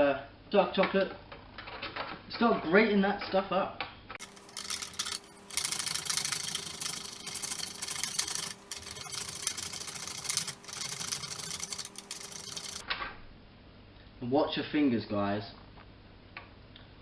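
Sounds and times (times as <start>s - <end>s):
chocolate scraping on grater: 4.2s - 12.8s.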